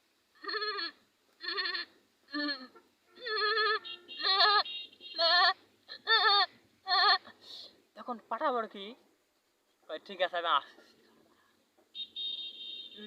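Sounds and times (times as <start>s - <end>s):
man imitating goat bleating: 0.4s - 4.6s.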